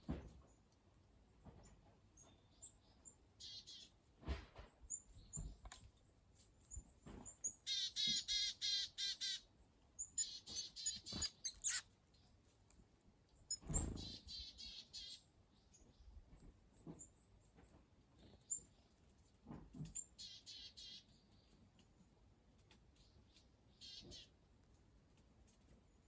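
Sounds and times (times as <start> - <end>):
birds chirping: 10.0 - 11.8, 13.5 - 15.1
harsh buzzy bird calls: 10.0 - 11.8.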